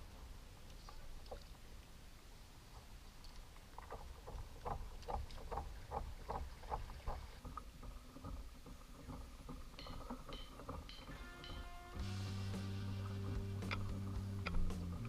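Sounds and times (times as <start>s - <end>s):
low wind rumble: 0.0s - 15.0s
water slapping against kayak hull: 3.8s - 11.2s
music: 10.4s - 15.0s.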